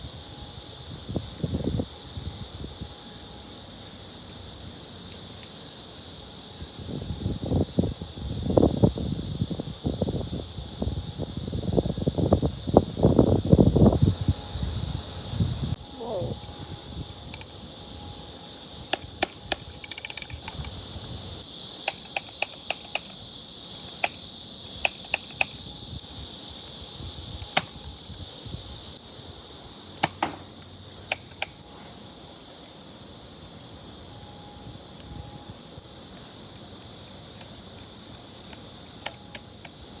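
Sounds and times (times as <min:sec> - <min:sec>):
steady high hiss: 0:00.0 - 0:40.0
toy blaster clicks: 0:18.9 - 0:20.8, 0:21.8 - 0:23.2, 0:23.8 - 0:25.6, 0:31.1 - 0:31.6, 0:39.0 - 0:39.8.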